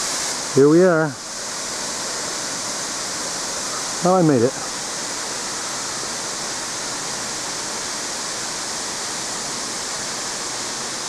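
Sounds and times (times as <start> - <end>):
waterfall crashing: 0.0 - 11.0.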